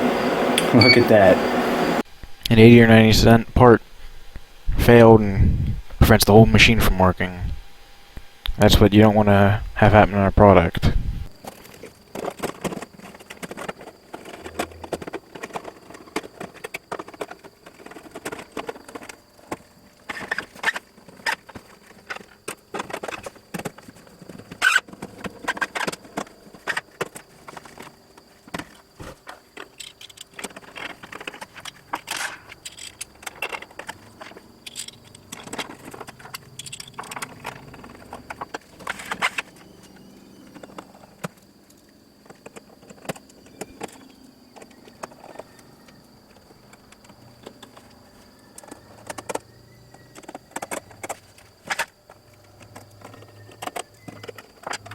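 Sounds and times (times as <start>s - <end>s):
faint high-pitched tone: 0.0s - 3.8s
metal parts and tools clinking: 29.6s - 39.4s.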